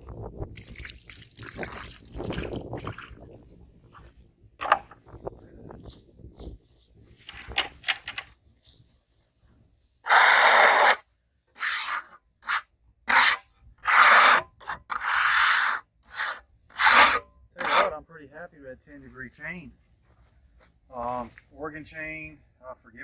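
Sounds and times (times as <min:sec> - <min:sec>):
rubbing strokes on wood: 0:11.6 - 0:18.0.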